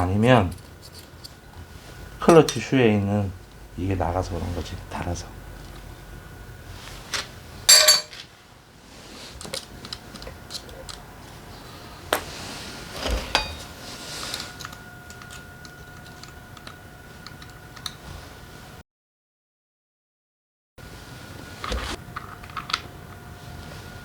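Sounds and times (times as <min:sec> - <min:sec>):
ringing metal clink: 0:07.7 - 0:08.1.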